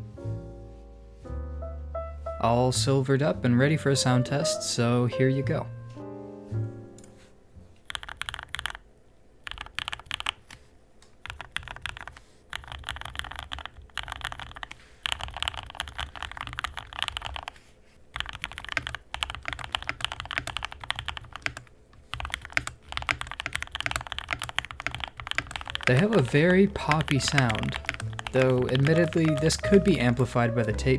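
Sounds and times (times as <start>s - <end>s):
mechanical keyboard typing: 7.8s - 8.8s, 9.4s - 10.6s, 11.2s - 17.6s, 18.2s - 30.2s.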